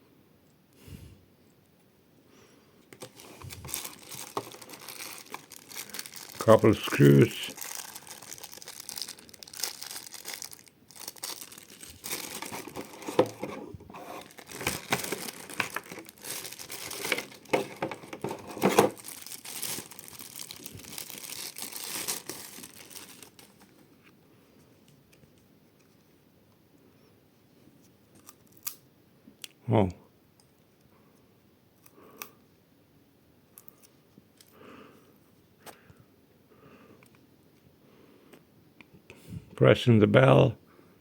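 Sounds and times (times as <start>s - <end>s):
packaging crinkling and tearing: 3.0s - 23.9s.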